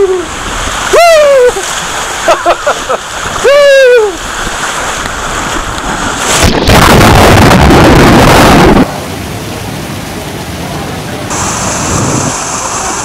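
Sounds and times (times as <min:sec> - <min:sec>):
water rushing and splashing: 0:00.0 - 0:13.0
wind buffeting microphone: 0:04.2 - 0:09.0, 0:11.3 - 0:13.0.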